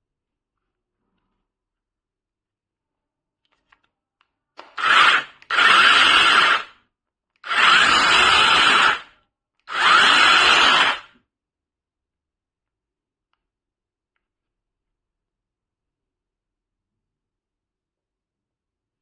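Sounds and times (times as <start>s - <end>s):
mini chainsaw motor whining: 4.8s - 6.7s, 7.4s - 9.1s, 9.7s - 11.1s.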